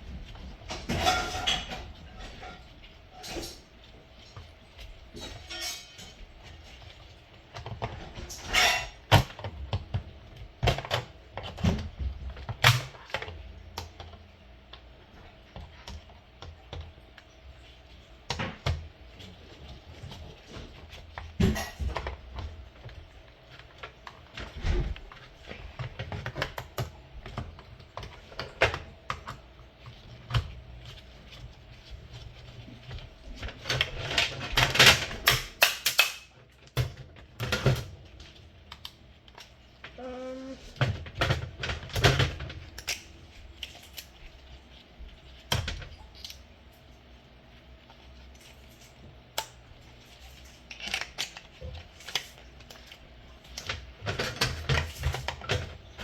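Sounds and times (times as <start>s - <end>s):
plastic parts clicking and knocking: 32.8s - 38.0s.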